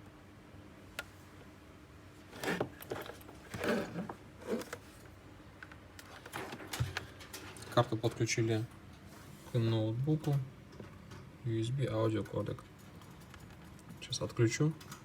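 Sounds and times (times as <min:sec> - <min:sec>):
handling scrapes and rustles: 0:02.3 - 0:05.1.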